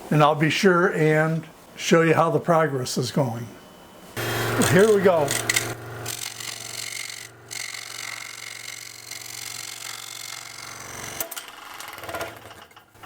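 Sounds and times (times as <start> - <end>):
scroll saw motor hum: 4.2 - 11.2
saw blade cutting wood: 4.2 - 12.1.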